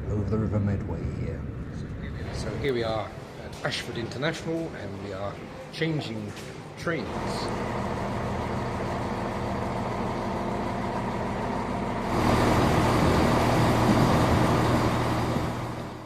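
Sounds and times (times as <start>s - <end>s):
train diesel engine humming: 6.6s - 16.0s.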